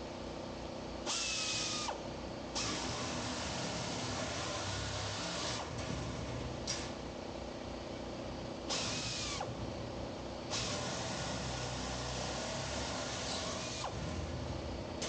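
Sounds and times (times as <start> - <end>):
power tool running in bursts: 2.6 - 6.0, 8.7 - 9.5, 10.5 - 14.4.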